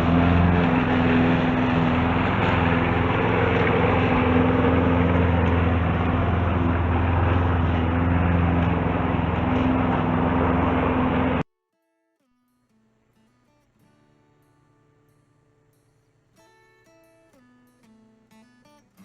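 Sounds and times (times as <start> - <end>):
lawn mower engine running: 0.0 - 11.4.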